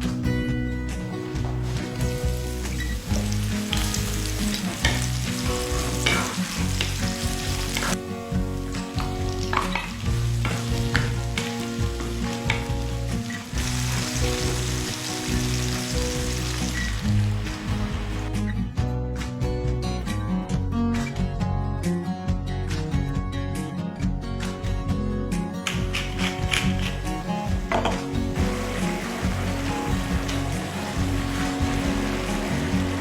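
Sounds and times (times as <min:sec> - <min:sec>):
food sizzling in a pan: 0:01.1 - 0:18.3, 0:28.4 - 0:33.0
utensil scraping a pan: 0:02.8 - 0:08.0.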